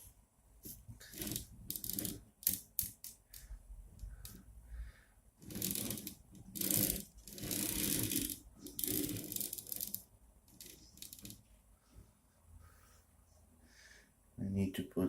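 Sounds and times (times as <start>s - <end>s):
parts rattling and rustling: 5.4s - 11.5s.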